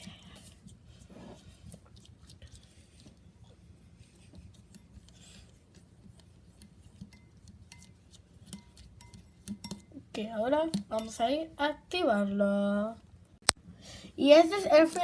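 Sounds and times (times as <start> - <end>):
glue being stirred in container: 0.0 - 10.0.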